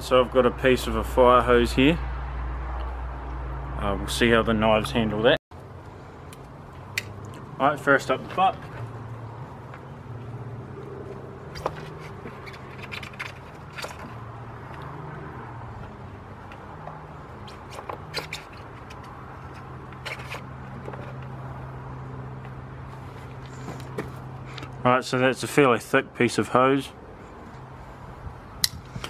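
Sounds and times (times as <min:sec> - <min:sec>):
knife scraping through rubber hose: 0:11.4 - 0:14.2, 0:17.4 - 0:21.3.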